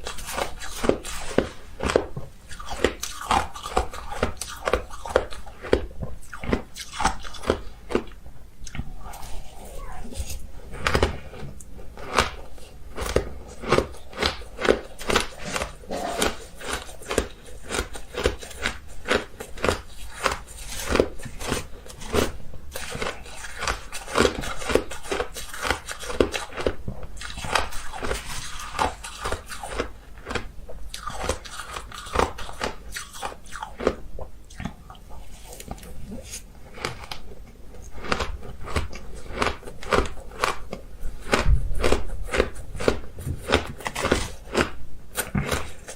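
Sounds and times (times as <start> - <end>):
person crunching ice: 10.2 - 34.0, 37.8 - 45.9.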